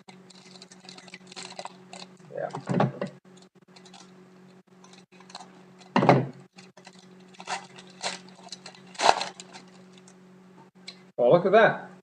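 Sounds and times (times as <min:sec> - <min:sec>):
cards and foil pack rustling: 0:00.0 - 0:02.6, 0:03.4 - 0:04.2, 0:04.8 - 0:10.2
low electrical hum: 0:00.0 - 0:12.0.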